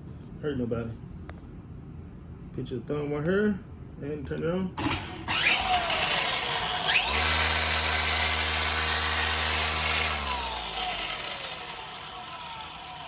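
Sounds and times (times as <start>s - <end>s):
string trimmer motor whining: 4.8s - 13.0s.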